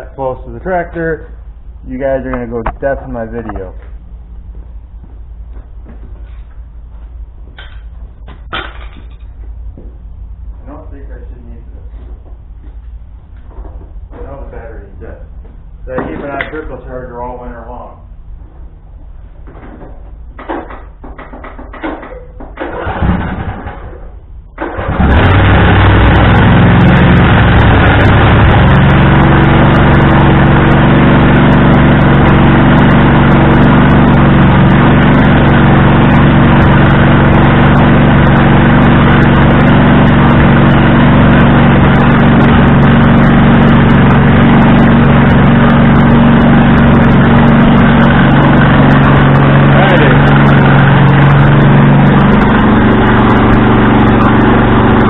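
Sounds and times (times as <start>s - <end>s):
riding tractor engine running: 19.5s - 55.0s.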